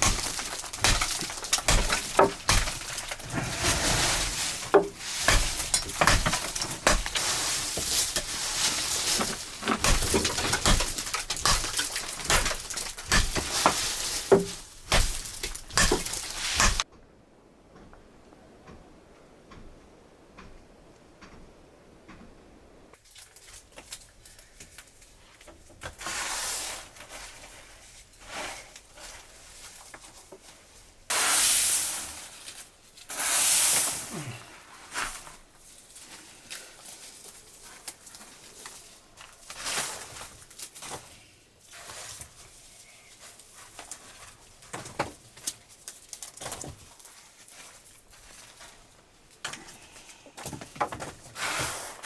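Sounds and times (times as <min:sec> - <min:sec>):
rustling and tearing: 0:00.0 - 0:16.8.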